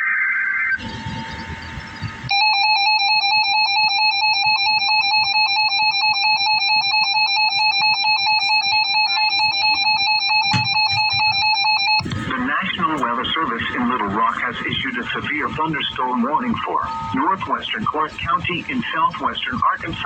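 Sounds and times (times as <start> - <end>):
electronic attention tone beeping: 0.0 - 12.0
static: 0.0 - 20.0.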